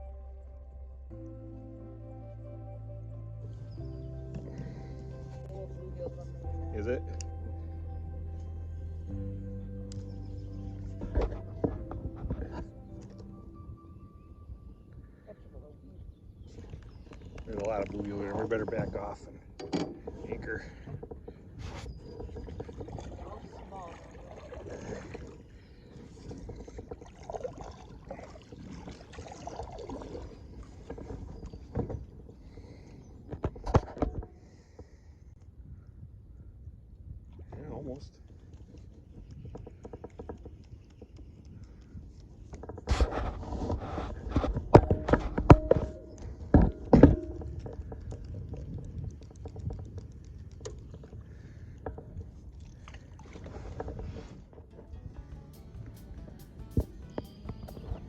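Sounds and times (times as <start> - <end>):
low rumble: 0.0 - 18.2, 54.5 - 58.0
low rumble of water and wind: 0.0 - 58.0.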